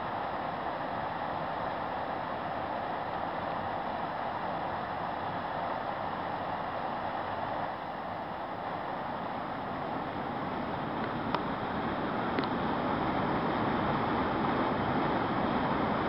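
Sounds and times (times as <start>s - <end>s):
flowing creek water: 0.0s - 16.0s
faint clicks: 12.3s - 12.6s.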